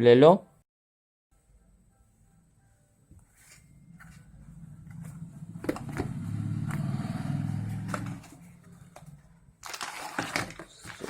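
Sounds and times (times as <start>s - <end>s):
vehicle engine hum passing: 3.9s - 9.4s.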